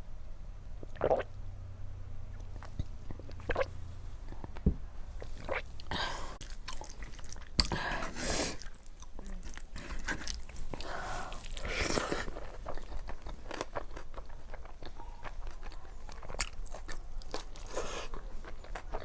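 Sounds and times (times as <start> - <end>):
person chewing food: 5.2 - 19.0.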